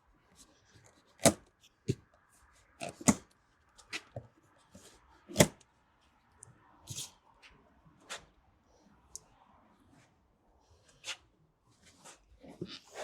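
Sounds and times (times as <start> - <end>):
parts knocking and clicking: 2.8 - 3.3.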